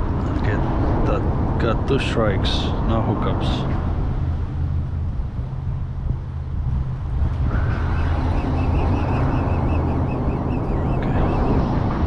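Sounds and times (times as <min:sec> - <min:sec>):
outdoor noise: 0:00.0 - 0:12.0
motorboat engine drone: 0:02.6 - 0:12.0
thin wavering whine: 0:05.6 - 0:11.9.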